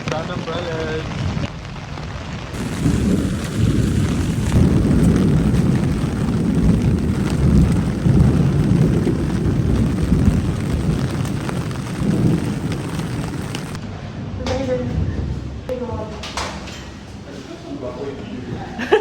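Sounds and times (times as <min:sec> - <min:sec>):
wind buffeting microphone: 0:00.0 - 0:13.8.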